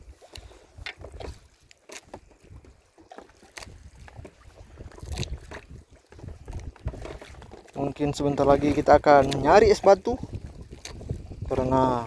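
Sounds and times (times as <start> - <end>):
water lapping against boat hull: 0.0 - 12.0
wind buffeting microphone: 3.6 - 12.0.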